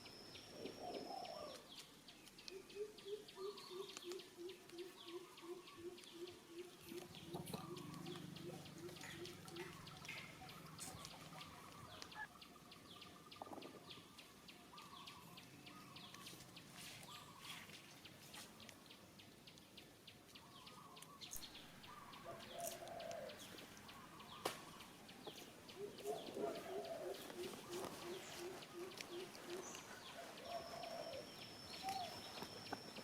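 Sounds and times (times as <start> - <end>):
rapid bird chirps: 0.0 - 18.6, 19.3 - 33.0
low cooing notes: 7.2 - 12.2.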